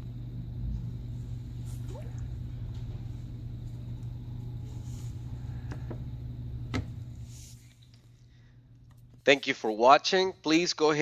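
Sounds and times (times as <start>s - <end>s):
low hum: 0.0s - 9.4s.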